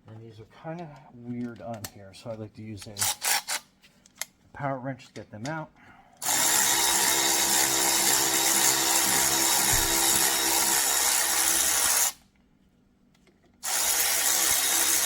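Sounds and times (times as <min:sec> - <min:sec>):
power wrench running: 0:06.2 - 0:12.2, 0:13.6 - 0:15.0.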